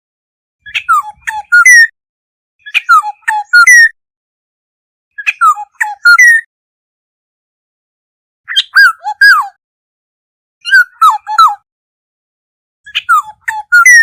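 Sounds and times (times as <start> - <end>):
bird whistling call: 0.7 - 1.9, 2.6 - 4.0, 5.2 - 6.5, 12.9 - 14.0.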